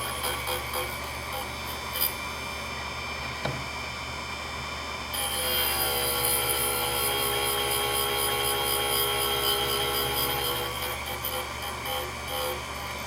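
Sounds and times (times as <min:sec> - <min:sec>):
drill grinder grinding: 0:00.0 - 0:02.2, 0:05.1 - 0:13.0
high ringing whine: 0:00.0 - 0:03.0, 0:05.1 - 0:13.0.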